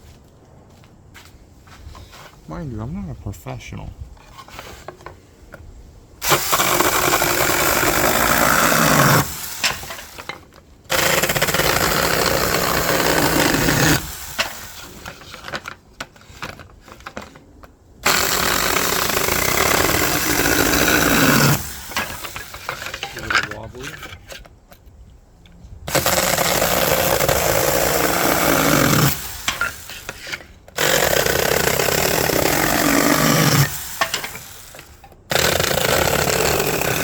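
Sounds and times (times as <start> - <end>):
mini chainsaw cutting wood: 6.2 - 17.3, 18.0 - 24.2, 25.9 - 37.0.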